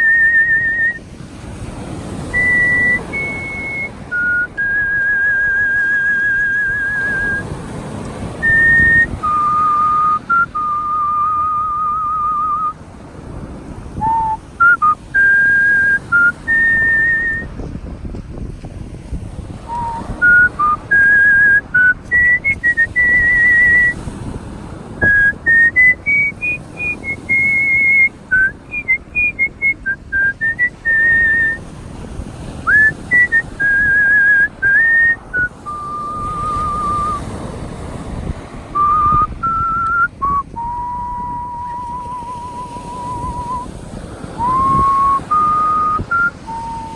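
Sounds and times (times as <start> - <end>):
person whistling a melody: 0.0 - 1.0, 2.2 - 7.6, 8.4 - 12.8, 14.0 - 17.6, 19.7 - 24.0, 25.0 - 31.6, 32.6 - 37.4, 38.7 - 43.7, 44.3 - 46.9
steady rushing noise: 0.0 - 12.8.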